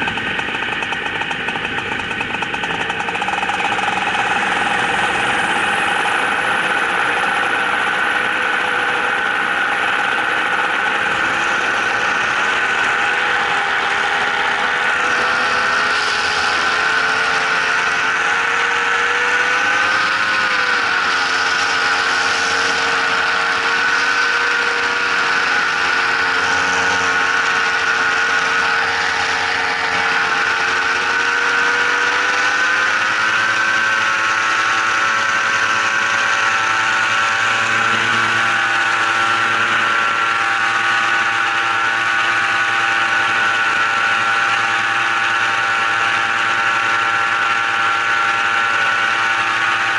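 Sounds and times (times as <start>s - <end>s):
engine running: 0.0s - 49.9s.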